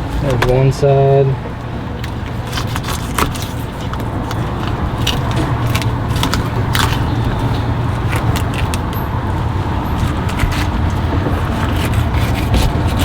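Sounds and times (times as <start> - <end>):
low motor hum: 0.0 - 13.0
knife scraping fish bones: 2.4 - 7.4, 10.0 - 13.0.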